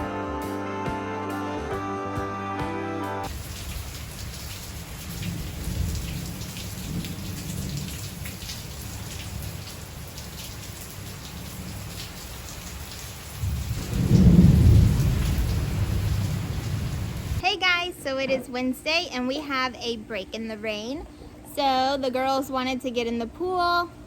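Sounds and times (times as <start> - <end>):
steady rain falling: 3.3 - 17.4
rumble of thunder: 5.1 - 8.6, 13.4 - 17.4.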